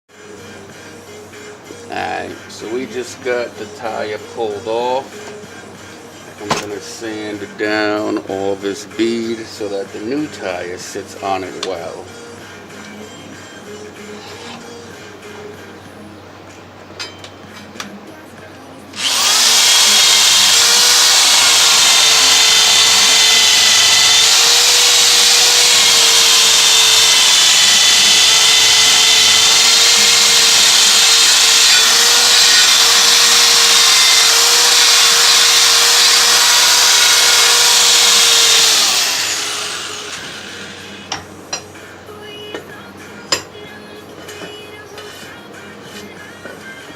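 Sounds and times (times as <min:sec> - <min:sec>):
power sander running: 0:19.0 - 0:41.1.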